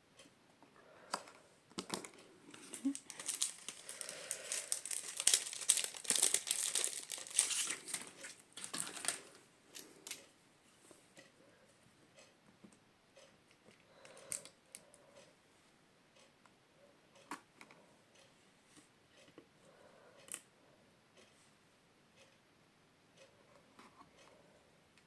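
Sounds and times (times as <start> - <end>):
paper crinkling and rustling: 1.8 - 10.2.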